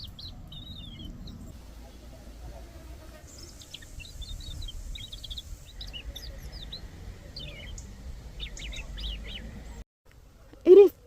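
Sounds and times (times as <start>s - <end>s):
robin singing: 0.0s - 2.1s, 3.2s - 9.8s.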